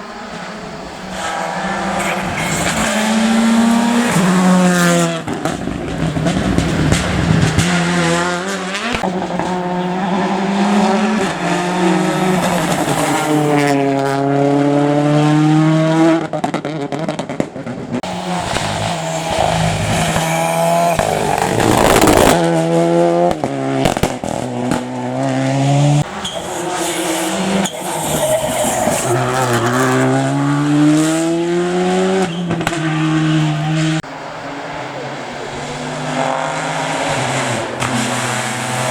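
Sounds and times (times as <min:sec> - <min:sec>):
rally car engines revving: 0:00.0 - 0:38.9
tyre squeal: 0:00.9 - 0:05.0, 0:09.1 - 0:14.0, 0:18.0 - 0:22.4, 0:26.0 - 0:30.6.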